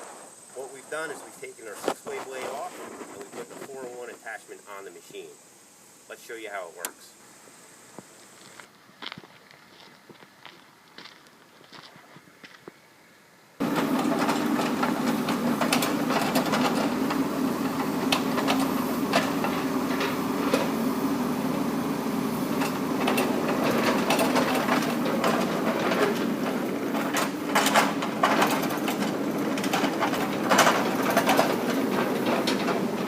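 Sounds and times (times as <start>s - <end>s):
diesel engine running: 13.6s - 33.0s
metallic clanks and knocks: 22.6s - 33.0s.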